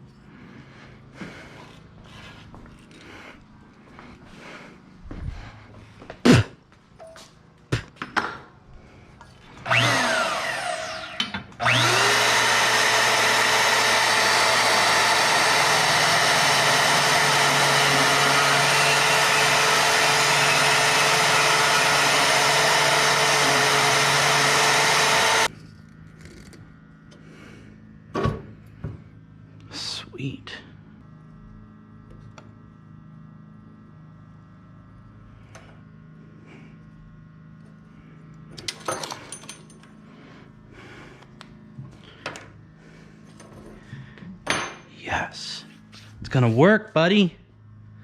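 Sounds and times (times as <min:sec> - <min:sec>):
electric power tool running: 0:09.5 - 0:27.5.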